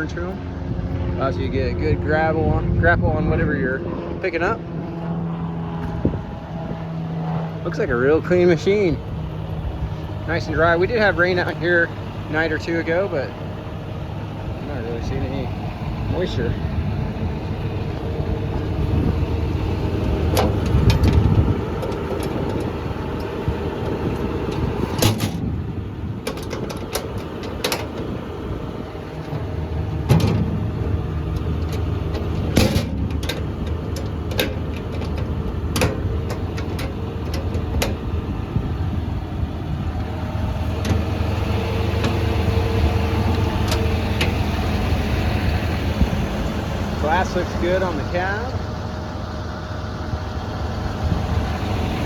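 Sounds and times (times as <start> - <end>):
excavator diesel engine idling: 4.4 - 52.0
sharp clicks and knocks: 17.9 - 25.6, 26.2 - 28.4, 29.0 - 38.3, 40.7 - 44.6.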